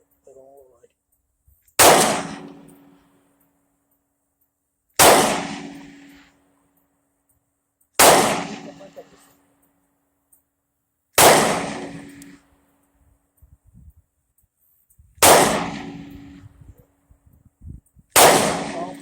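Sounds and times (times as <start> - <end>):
gunshots with echo: 1.8 - 2.9, 5.0 - 6.2, 8.0 - 9.2, 11.2 - 12.4, 15.2 - 16.4, 18.2 - 19.0.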